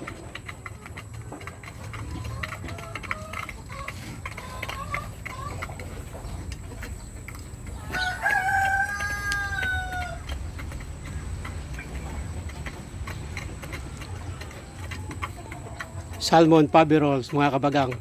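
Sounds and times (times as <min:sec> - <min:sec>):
chickens clucking: 0:00.0 - 0:18.0
rooster crowing: 0:07.8 - 0:10.3.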